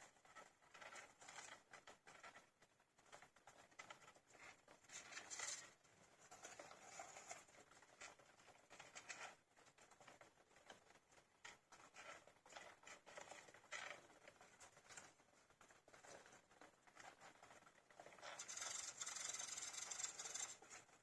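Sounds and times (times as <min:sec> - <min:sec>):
hamster pups scrabbling: 0:03.1 - 0:21.0
faint hamster chirps: 0:18.1 - 0:20.8.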